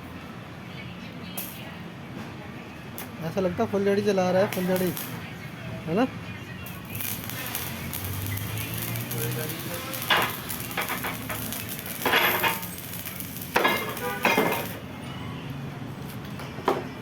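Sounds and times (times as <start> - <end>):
welding arc sizzling: 3.0 - 14.9
metallic clanks: 10.1 - 12.8.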